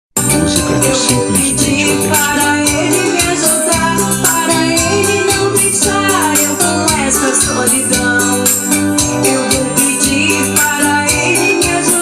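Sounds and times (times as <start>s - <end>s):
upbeat pop song: 0.2s - 12.0s.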